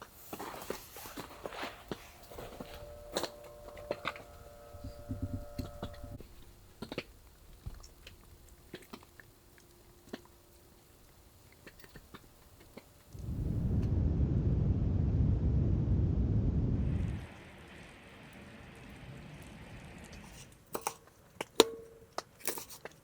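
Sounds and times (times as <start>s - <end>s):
faint steady tone: 0.1s - 22.2s
crunchy chewing: 6.3s - 13.1s.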